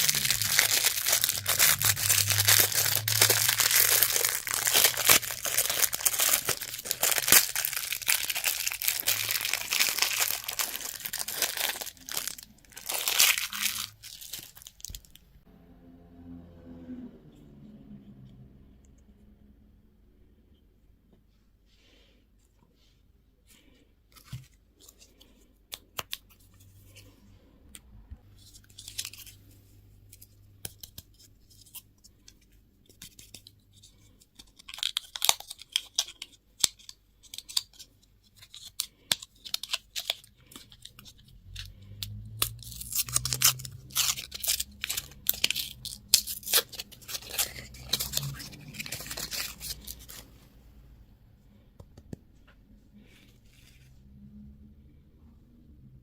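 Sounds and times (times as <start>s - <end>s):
plastic packaging crinkling: 0.0s - 15.2s, 34.4s - 50.4s.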